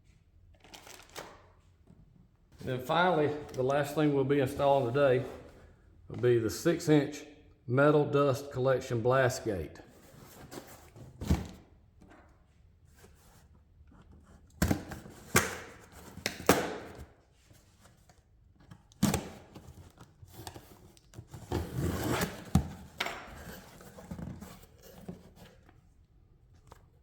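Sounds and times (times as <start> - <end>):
packing material rustling and tearing: 0.6 - 1.4.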